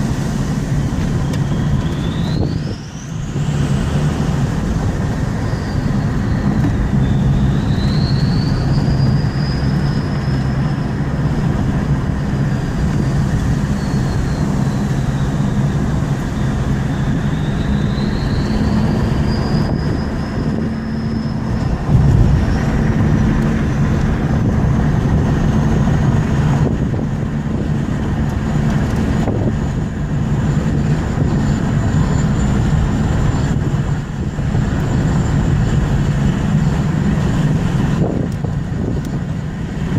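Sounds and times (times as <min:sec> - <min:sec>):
engine steady drone: 0:00.0 - 0:39.9
turbocharger whistling: 0:00.6 - 0:27.6, 0:28.3 - 0:39.9.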